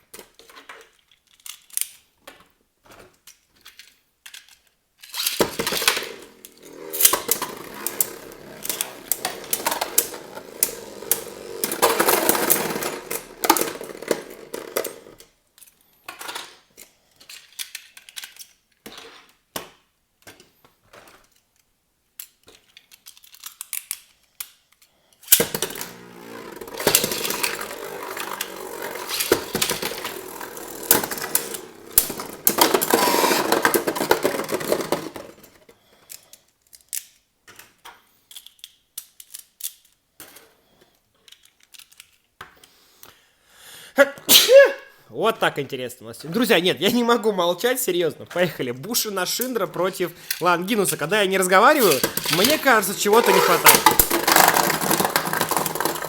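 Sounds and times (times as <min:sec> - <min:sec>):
spinning tops clashing in plastic stadium: 0:05.0 - 0:15.2, 0:25.3 - 0:35.6, 0:49.3 - 0:56.0.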